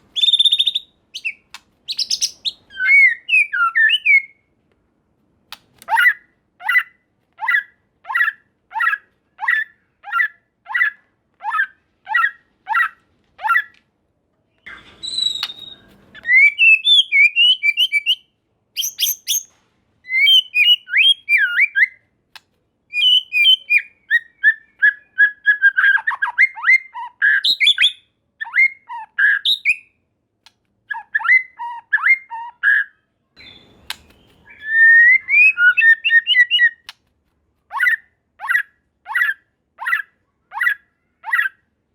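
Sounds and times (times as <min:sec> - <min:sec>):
bird song of whistles and trills: 0:00.0 - 0:04.5, 0:14.5 - 0:22.0, 0:22.9 - 0:30.0, 0:30.9 - 0:37.0, 0:37.7 - 0:41.6
bird calling repeated notes: 0:22.9 - 0:30.0, 0:30.9 - 0:36.9.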